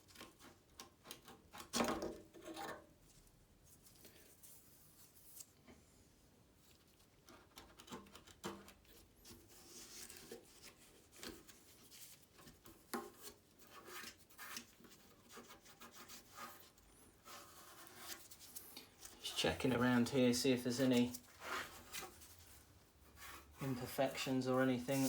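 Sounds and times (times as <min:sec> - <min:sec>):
light rubbing: 0:20.6 - 0:25.0.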